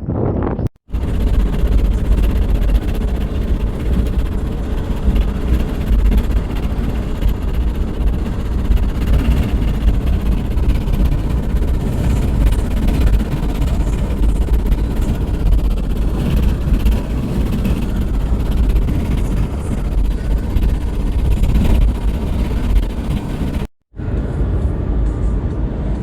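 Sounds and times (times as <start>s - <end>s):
wind buffeting microphone: 0.0s - 26.0s.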